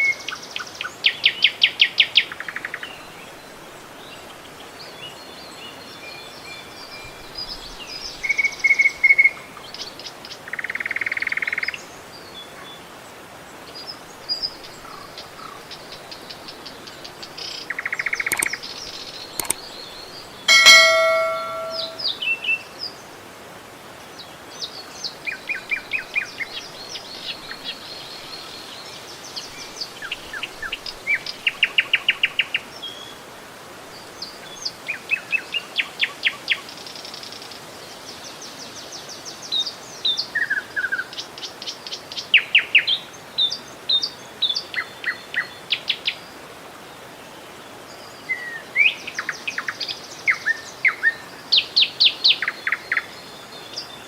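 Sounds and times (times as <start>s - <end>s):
running river water: 0.0s - 22.0s, 22.6s - 54.0s
songbirds singing and chirping: 13.8s - 22.0s.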